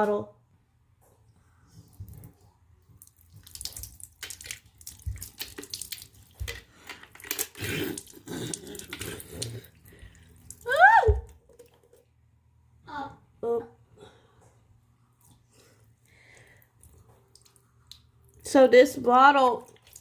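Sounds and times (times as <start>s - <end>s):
water splashing into a sink: 3.0s - 12.0s, 19.4s - 20.0s.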